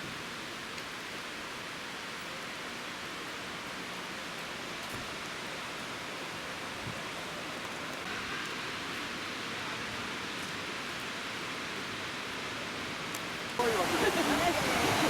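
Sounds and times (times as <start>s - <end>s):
waterfall rushing: 13.6s - 15.0s.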